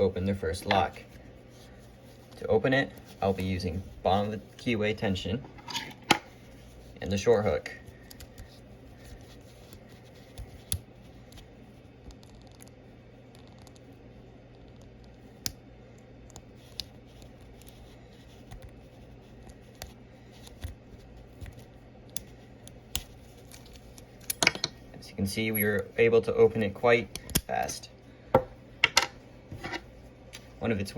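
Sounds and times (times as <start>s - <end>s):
faint steady hum: 0.0s - 30.9s.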